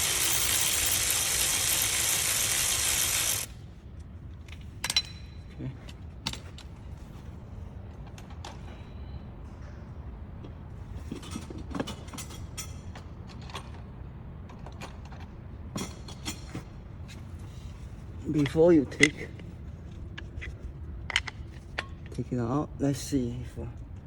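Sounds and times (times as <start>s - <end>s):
ratchet and tools clinking: 0.0s - 3.5s.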